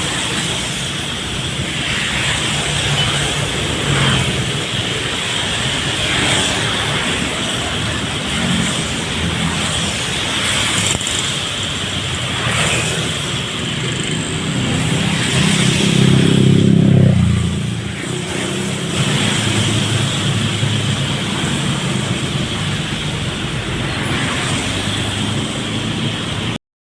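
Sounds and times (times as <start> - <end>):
rain and tyres on wet road: 0.0 - 16.6, 17.4 - 26.6.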